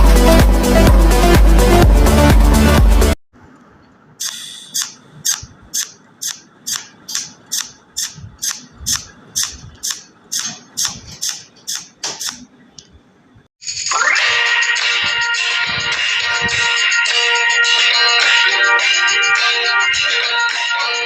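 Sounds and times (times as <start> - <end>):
music: 0.0 - 3.2, 13.9 - 21.0.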